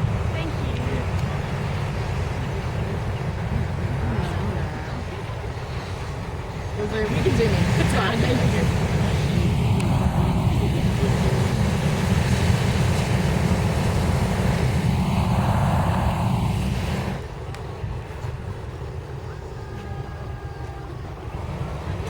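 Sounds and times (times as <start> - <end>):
propane burner rumbling: 0.0 - 22.0.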